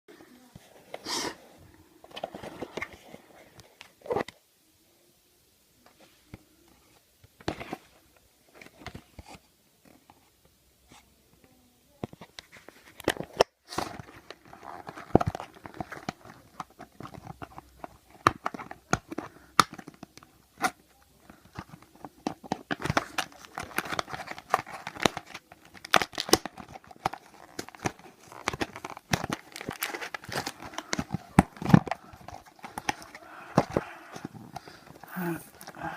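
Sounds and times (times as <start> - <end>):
clicks and rustles: 12.0 - 35.9
packaging tearing and crinkling: 22.5 - 35.9.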